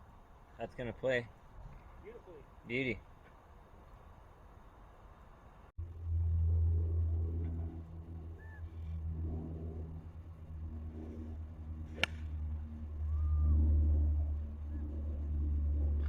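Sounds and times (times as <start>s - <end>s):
golf cart low rumble: 5.4s - 16.0s.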